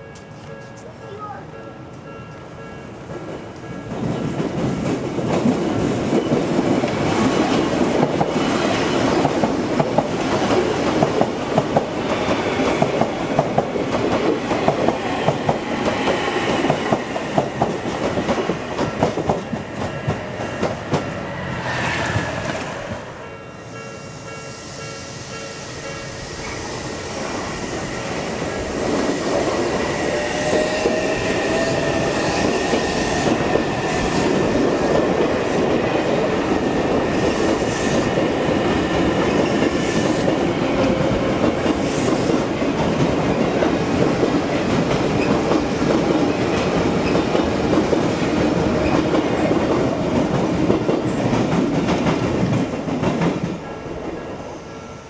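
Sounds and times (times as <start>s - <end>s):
crossing warning bell: 0.0s - 4.5s, 23.2s - 28.7s
train wheel and rail noise: 0.0s - 55.0s.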